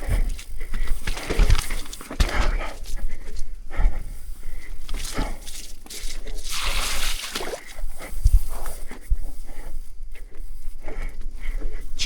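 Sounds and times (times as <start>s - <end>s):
mountain bike rattling and knocking: 0.0s - 3.9s.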